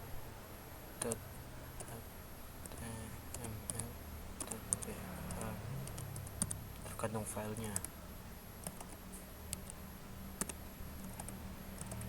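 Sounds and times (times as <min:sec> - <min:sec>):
computer keyboard typing: 0:01.0 - 0:01.2, 0:02.6 - 0:07.9, 0:08.6 - 0:09.8, 0:10.4 - 0:12.0.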